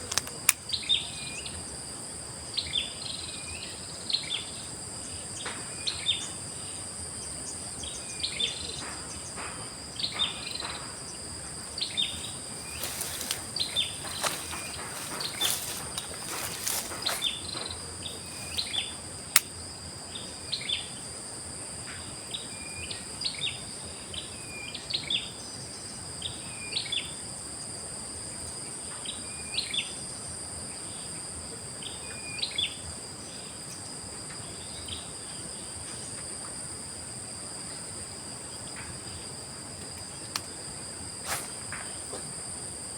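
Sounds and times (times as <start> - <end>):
clicks and rustles: 0.0 - 0.6, 12.0 - 18.8
crickets droning: 0.0 - 42.9
bird chirping: 10.0 - 19.0.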